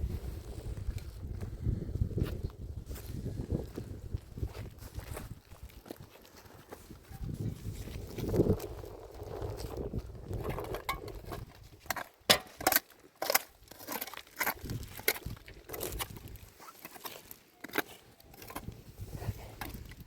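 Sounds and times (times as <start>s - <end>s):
objects being handled: 10.4s - 20.0s.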